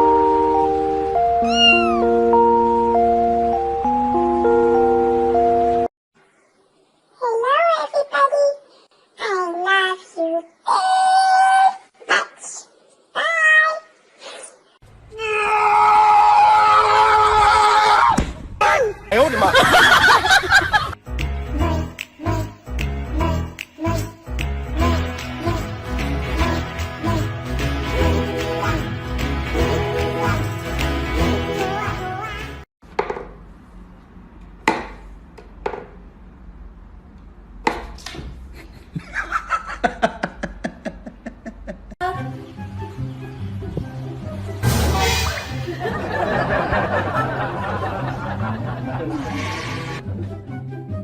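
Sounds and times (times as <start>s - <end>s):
cat meowing: 1.4s - 2.1s.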